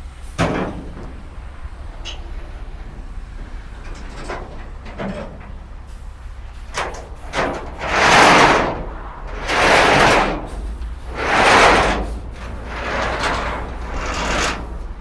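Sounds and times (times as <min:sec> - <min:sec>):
heavy machinery engine rumble: 0:00.0 - 0:15.0
loud rushing noise: 0:06.4 - 0:15.0.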